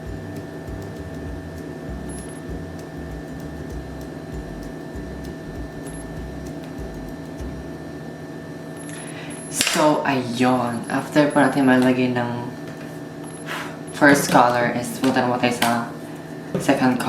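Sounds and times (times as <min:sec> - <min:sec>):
low rumble: 0:00.0 - 0:08.1
machine hum with two tones: 0:00.0 - 0:14.6.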